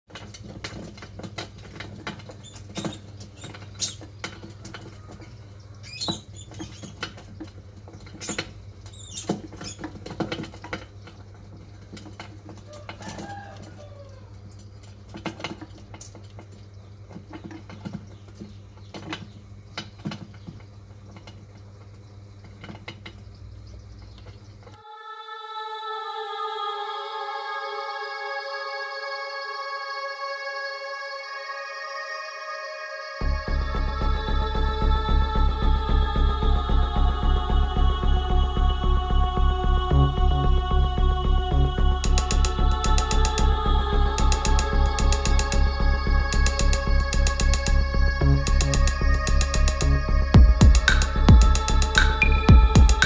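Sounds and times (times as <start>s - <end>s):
mice scratching on hard surface: 0.2s - 24.5s, 42.0s - 43.5s, 44.2s - 45.7s, 46.3s - 49.9s
mouse squeak: 2.4s - 4.1s, 5.8s - 7.1s, 8.1s - 9.9s
steady low hum: 33.0s - 53.0s.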